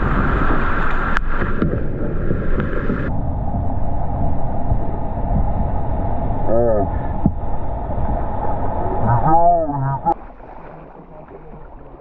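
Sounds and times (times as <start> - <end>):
wind buffeting microphone: 0.0 - 9.8.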